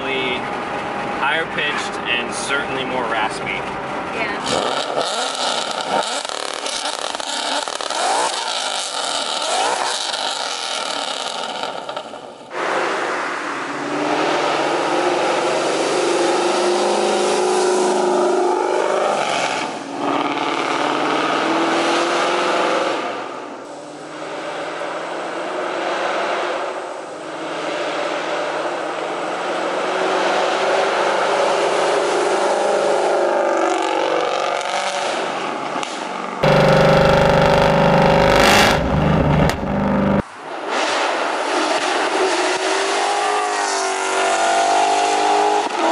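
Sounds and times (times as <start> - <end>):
car engine revving through gears: 4.4 - 11.8, 13.8 - 23.2, 36.4 - 40.2.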